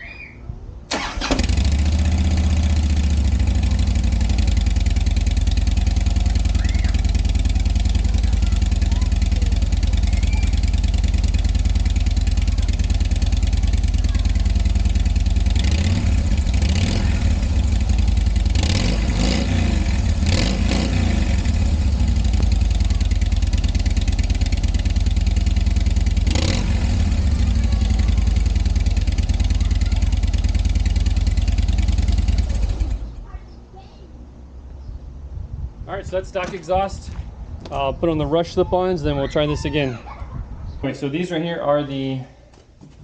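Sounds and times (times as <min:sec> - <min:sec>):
motorcycle throttle blips: 0:00.9 - 0:33.2
motorcycle engine idling: 0:01.0 - 0:33.3.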